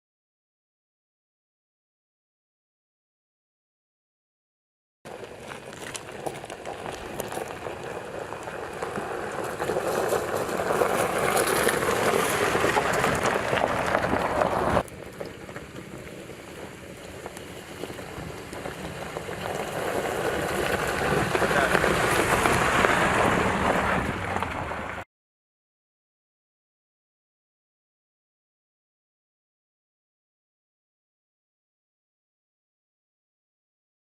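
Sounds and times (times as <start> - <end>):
tyres on rough terrain: 5.1 - 25.0.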